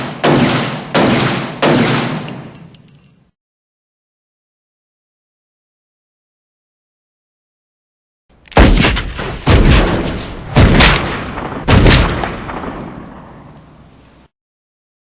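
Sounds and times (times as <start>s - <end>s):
heavy gunshots with rolling echo: 0.0s - 2.6s, 8.6s - 13.6s.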